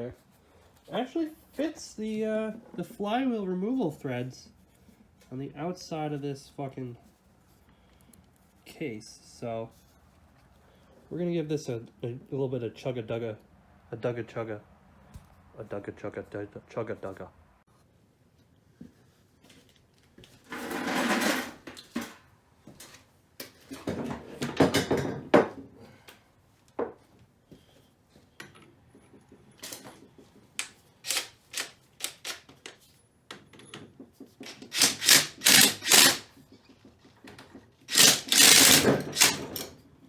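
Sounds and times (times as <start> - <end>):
impact wrench hammering: 34.4 - 36.4, 37.9 - 39.7.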